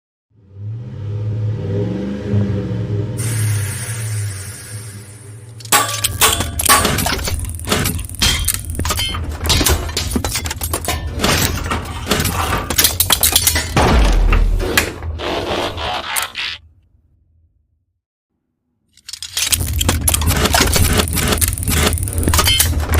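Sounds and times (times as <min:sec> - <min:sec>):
hiss: 0:03.2 - 0:05.4
metallic clicks and clanks: 0:05.5 - 0:14.9, 0:18.9 - 0:22.9.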